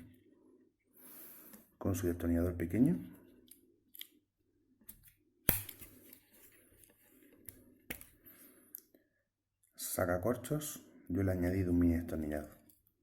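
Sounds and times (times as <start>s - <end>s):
soft handling noise: 5.9s - 8.9s.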